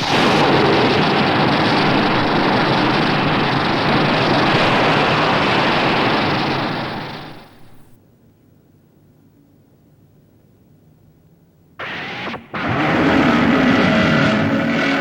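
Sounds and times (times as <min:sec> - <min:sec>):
loud steady rushing noise: 0:00.0 - 0:08.0.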